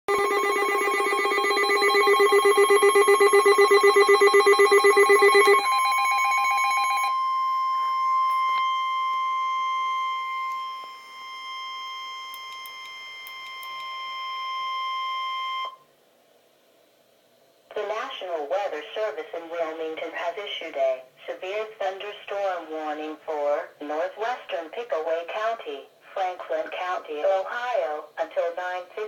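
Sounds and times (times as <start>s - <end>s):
fast-trilling ringing alert tone: 0.1s - 7.1s
steady warning alarm tone: 0.1s - 15.8s.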